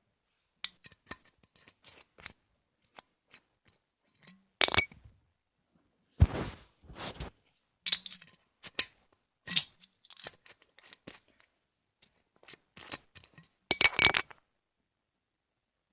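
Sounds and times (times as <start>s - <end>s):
bottle cap clicking and scraping: 7.9s - 11.2s.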